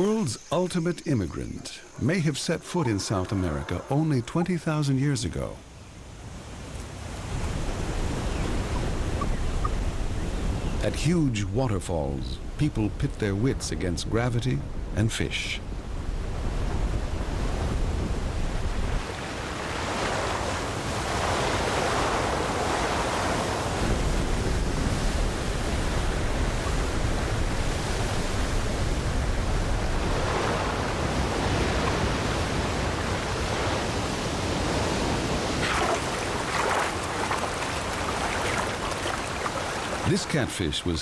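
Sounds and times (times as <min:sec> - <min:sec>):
waterfall rushing: 0:29.9 - 0:40.5.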